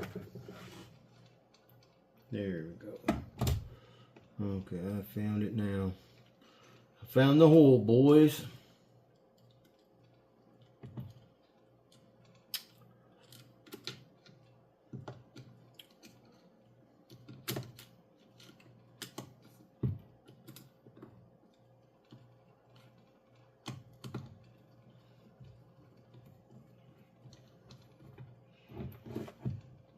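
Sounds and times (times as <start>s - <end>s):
small hard parts clicking: 9.1s - 28.7s.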